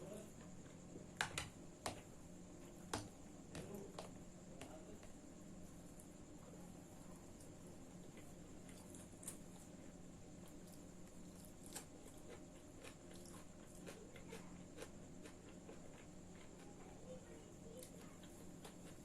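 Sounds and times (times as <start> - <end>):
person chewing: 10.4 - 16.7.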